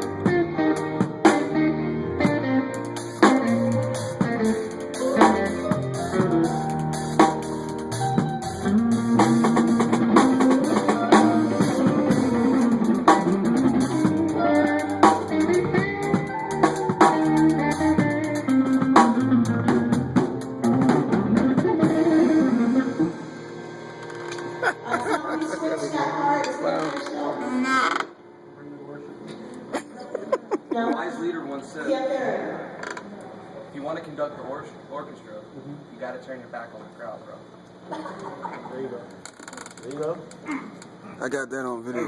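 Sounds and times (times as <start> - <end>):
drum kit strikes: 0.0 - 1.6, 2.2 - 22.2
guitar lines: 0.0 - 28.0.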